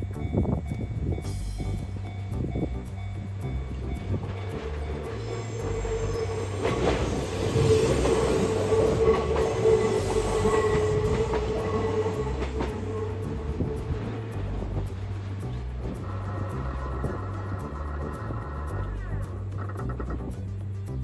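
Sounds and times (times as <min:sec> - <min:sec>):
train wheels squealing on rail: 0:03.9 - 0:19.4.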